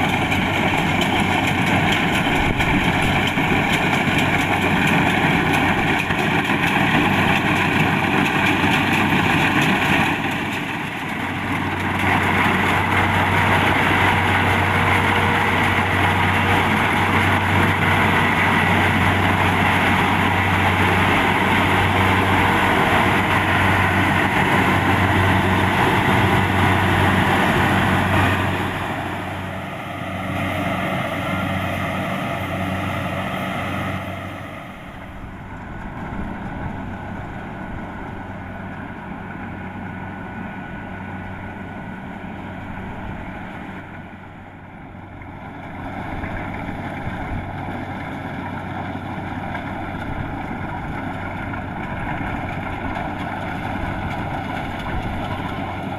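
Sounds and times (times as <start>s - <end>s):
combine harvester diesel engine: 0.0s - 55.9s.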